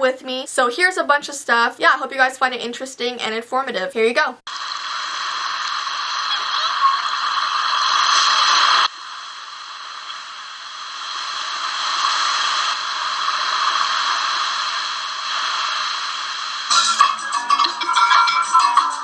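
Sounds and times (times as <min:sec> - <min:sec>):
loud steady hissing: 0:04.4 - 0:17.5.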